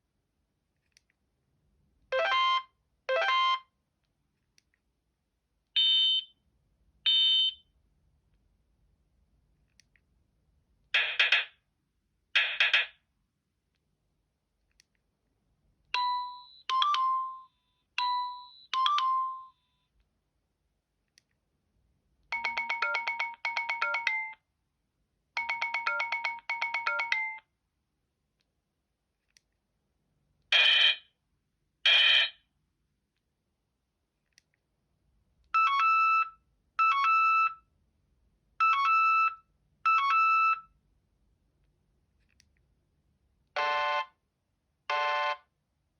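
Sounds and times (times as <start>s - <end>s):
mobile phone ringtones: 2.2s - 3.6s, 22.4s - 24.4s, 25.4s - 27.4s.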